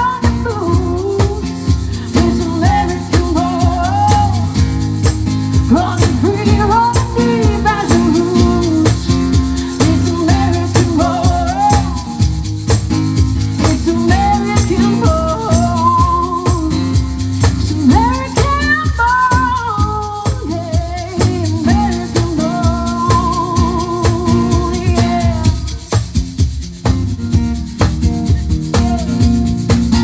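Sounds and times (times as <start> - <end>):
country band playing: 0.0 - 30.0
drum beat: 0.0 - 30.0.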